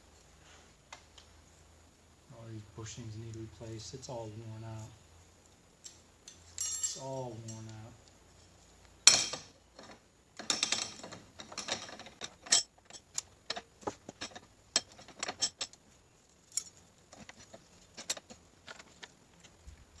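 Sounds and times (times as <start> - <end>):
metal parts clinking: 5.8 - 7.8, 9.1 - 15.8, 16.5 - 18.4.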